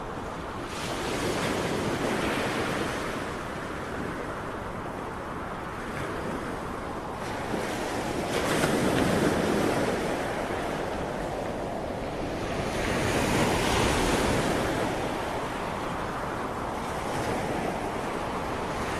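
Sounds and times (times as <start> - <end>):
sea waves breaking on shore: 0.0 - 18.9
wind buffeting microphone: 0.0 - 18.9.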